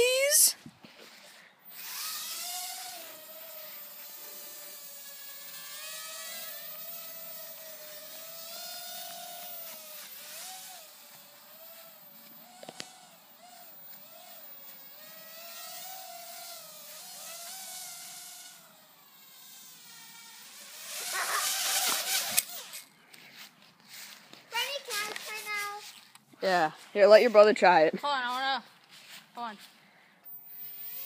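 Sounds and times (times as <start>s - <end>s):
toy drone motors whining: 0.0s - 0.5s, 1.6s - 22.9s, 30.3s - 31.0s
sharp click: 21.8s - 22.9s.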